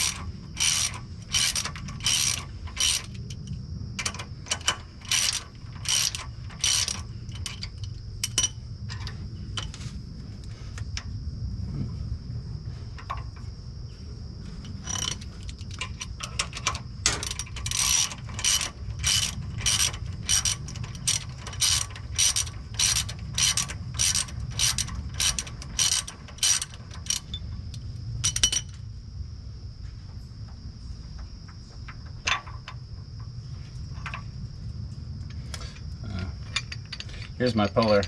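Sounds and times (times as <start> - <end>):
ratchet wrench clicking: 0.0 - 9.7, 14.7 - 28.7.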